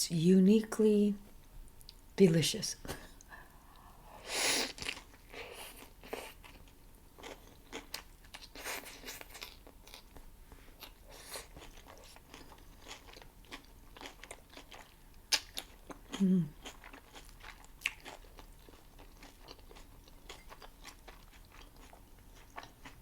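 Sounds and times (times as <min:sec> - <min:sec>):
chewing with clicks and crackles: 0:04.7 - 0:23.0.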